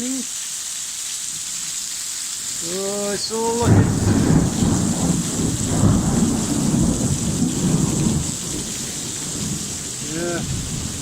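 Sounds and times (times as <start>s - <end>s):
torrential rain hiss: 0.0s - 11.0s
thunder rumbling: 3.5s - 11.0s.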